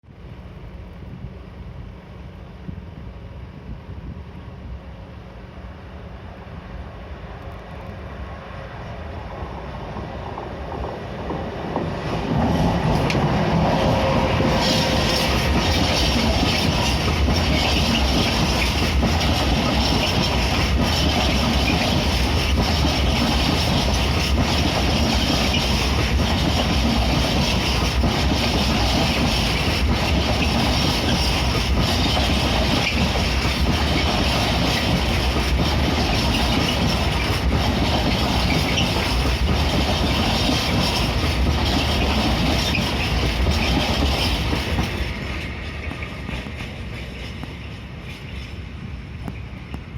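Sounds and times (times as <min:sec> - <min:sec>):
freight train rumbling past: 0:00.0 - 0:49.9
wheels clicking over rail joints: 0:10.0 - 0:48.6.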